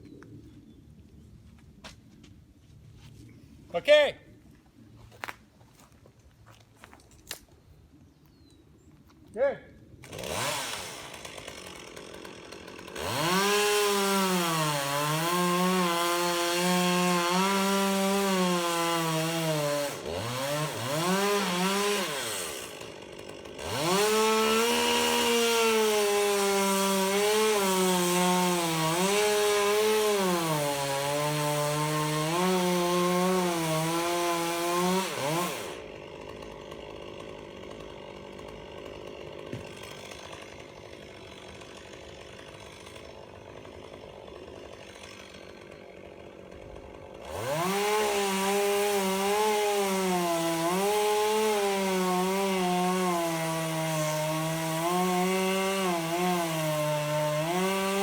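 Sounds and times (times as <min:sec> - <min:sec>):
chainsaw cutting wood: 0:05.1 - 0:07.7, 0:09.9 - 0:58.0
chainsaw revving: 0:10.0 - 0:58.0.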